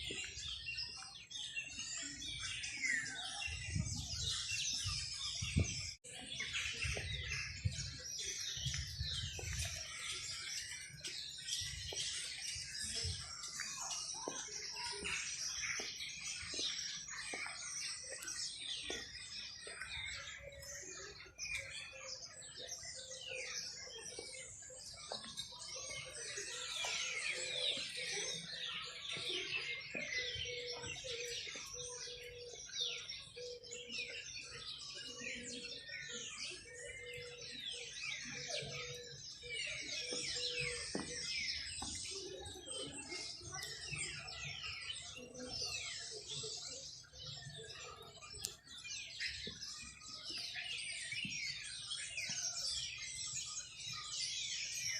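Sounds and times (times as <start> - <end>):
flock of small birds chirping: 0.0 - 54.9.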